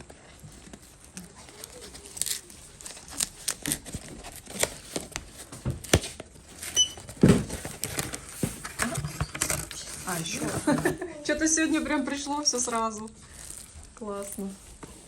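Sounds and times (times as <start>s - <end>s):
plastic packaging rustling: 0.0s - 15.0s
short electronic beep: 6.8s - 7.0s.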